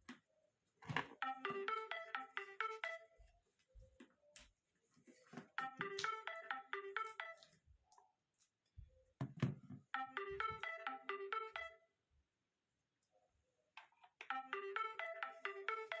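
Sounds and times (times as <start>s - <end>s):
mobile phone ringtone: 1.2s - 3.3s, 5.6s - 7.6s, 9.9s - 12.0s, 14.3s - 16.0s.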